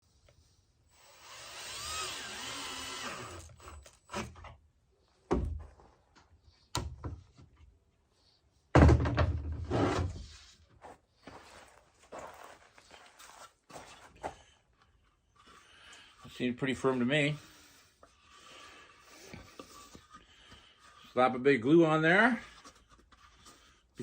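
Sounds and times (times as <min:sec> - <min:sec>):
drill boring into wood: 0:00.9 - 0:04.4
knocks of wood and tools: 0:05.3 - 0:05.8, 0:08.7 - 0:10.0.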